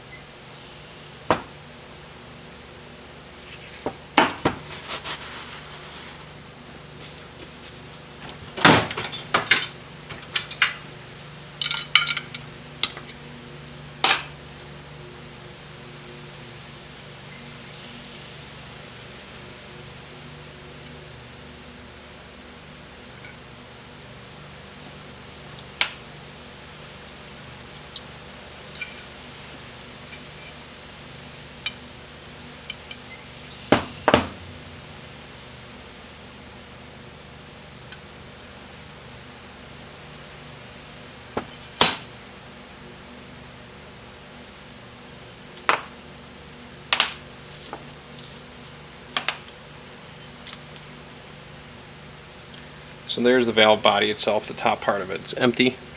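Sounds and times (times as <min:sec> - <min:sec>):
low steady hum: 0:00.0 - 0:55.9
sharp knocks: 0:01.3 - 0:01.6, 0:33.7 - 0:35.2
small metal parts clinking: 0:08.9 - 0:10.9, 0:11.6 - 0:13.0.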